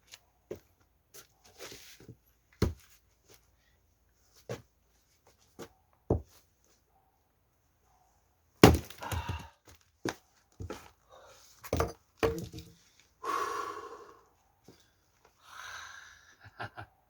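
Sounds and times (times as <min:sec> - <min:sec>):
axe knocking log: 0:08.6 - 0:09.5, 0:11.7 - 0:12.7
axe strike splitting log: 0:08.6 - 0:09.5, 0:11.7 - 0:12.7.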